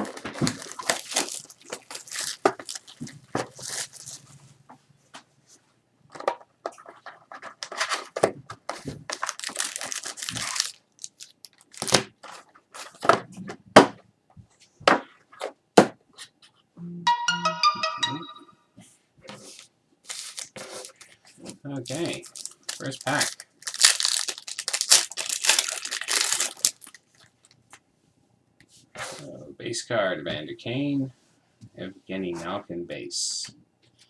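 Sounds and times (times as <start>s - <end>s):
wrapping tearing and crinkling: 0.0s - 4.3s, 6.8s - 13.0s, 20.0s - 21.2s, 21.8s - 27.6s
electronic chime: 17.1s - 18.7s.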